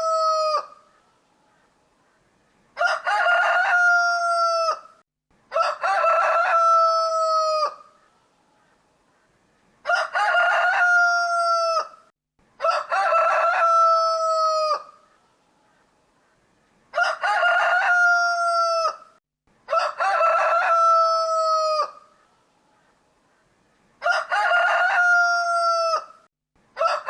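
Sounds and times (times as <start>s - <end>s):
rooster crowing: 0.0s - 0.8s, 2.8s - 7.9s, 9.8s - 15.0s, 16.9s - 22.1s, 24.0s - 26.2s, 26.8s - 27.0s.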